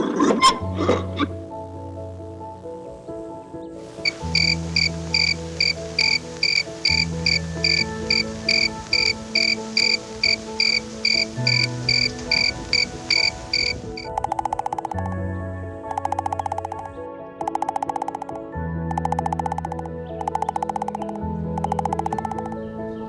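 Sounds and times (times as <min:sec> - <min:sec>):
background music with low notes: 0:00.0 - 0:23.0
rhythmic high-pitched chirping: 0:04.0 - 0:15.2, 0:15.9 - 0:22.6
fast buzzing trill: 0:04.1 - 0:15.2, 0:15.9 - 0:22.6.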